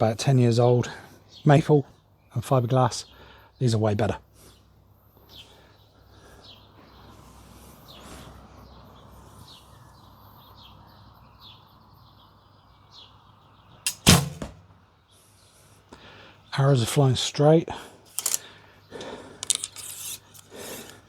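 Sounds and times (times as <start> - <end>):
small birds chirping: 1.1 - 13.8
bow being shot: 13.9 - 14.8.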